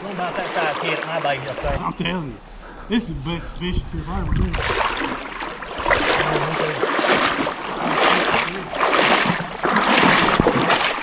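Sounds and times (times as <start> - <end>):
river water rushing: 0.0 - 1.8, 4.6 - 11.0.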